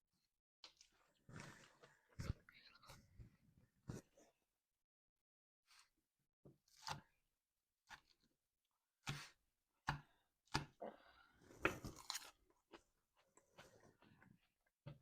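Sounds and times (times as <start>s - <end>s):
person chewing crunchy food: 10.9s - 14.7s.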